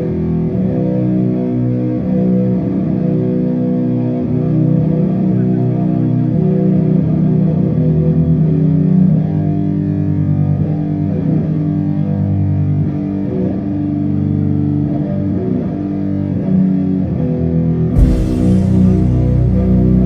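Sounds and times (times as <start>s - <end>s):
distorted guitar and bass riff: 0.0s - 20.0s
cymbal crash: 18.0s - 20.0s
drums and cymbals: 18.0s - 20.0s.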